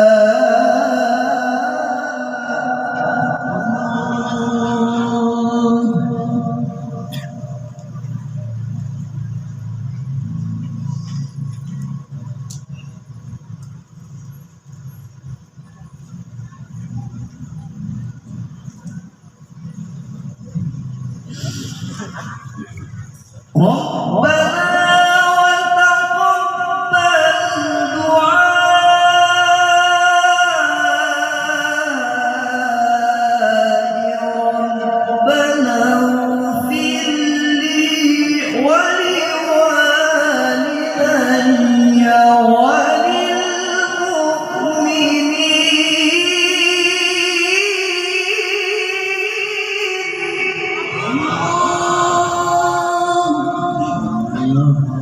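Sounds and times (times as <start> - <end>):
man reciting melodically: 0.0 - 9.4, 21.3 - 55.0.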